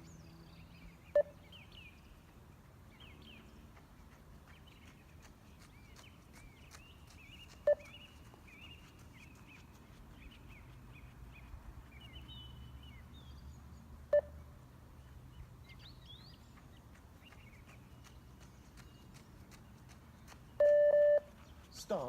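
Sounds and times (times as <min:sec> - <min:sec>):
faint birds chirping: 0:00.0 - 0:22.0
short single-tone beeps: 0:20.6 - 0:21.3.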